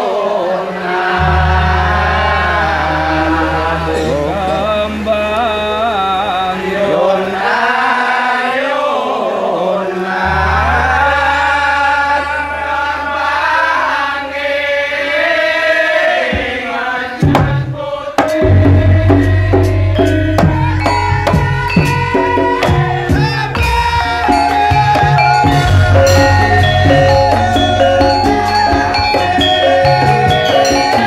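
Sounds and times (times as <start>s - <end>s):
melismatic chanted singing: 0.0s - 31.0s
low held drone note: 1.2s - 7.4s, 10.2s - 13.9s, 18.4s - 31.0s
hand drum strokes: 17.2s - 31.0s.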